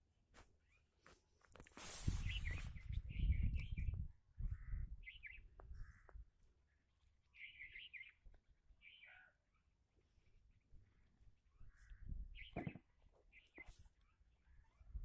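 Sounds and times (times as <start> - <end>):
rustling noise: 0.3 - 3.0
small birds chirping: 0.5 - 1.0, 1.8 - 15.0.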